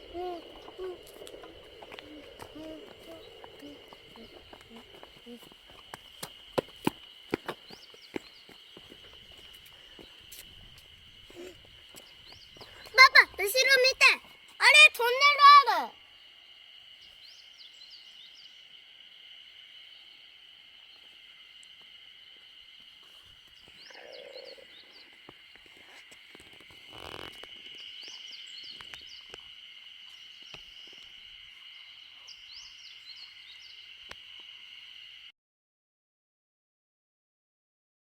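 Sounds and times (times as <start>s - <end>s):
rush of low noise: 0.0s - 5.2s
frogs trilling and chirping: 0.0s - 35.3s.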